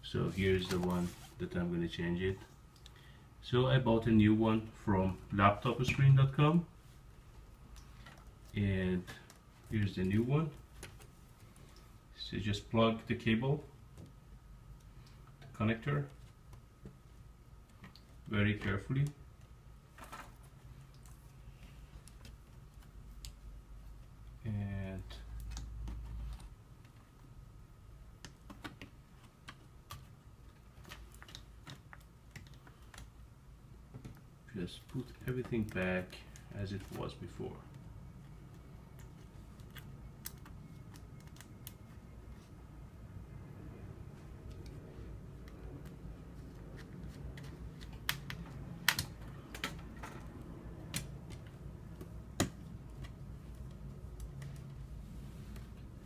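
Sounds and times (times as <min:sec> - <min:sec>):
steady low hum: 0:00.0 - 0:56.0
plastic laptop parts clicking: 0:28.2 - 0:33.2, 0:38.5 - 0:42.0, 0:45.4 - 0:54.8.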